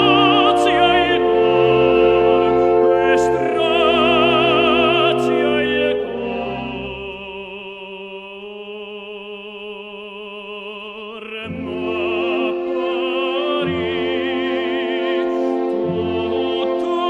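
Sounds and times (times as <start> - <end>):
orchestra playing: 0.0 - 7.6, 11.4 - 17.0
opera singer with vibrato: 0.0 - 17.0.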